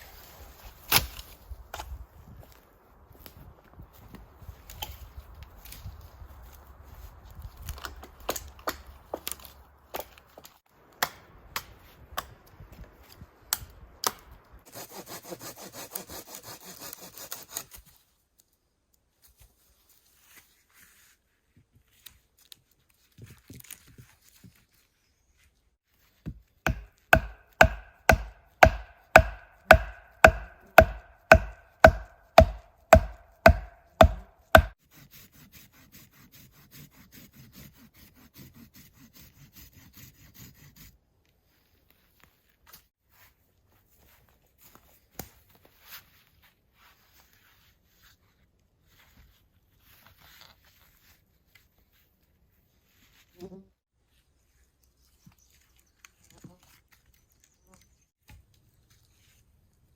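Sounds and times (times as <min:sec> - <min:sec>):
hand saw cutting wood: 0:14.7 - 0:17.9, 0:26.7 - 0:40.8
sharp strikes on wood: 0:26.7 - 0:34.8.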